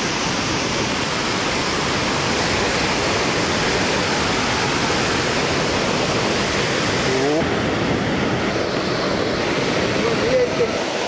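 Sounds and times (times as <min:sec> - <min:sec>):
roar of waterfall: 0:00.0 - 0:11.0.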